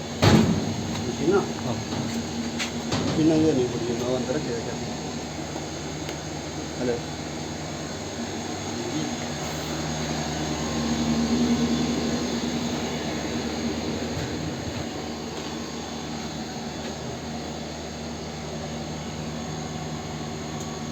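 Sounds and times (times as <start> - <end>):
heat pump humming and whooshing: 0.0 - 20.9.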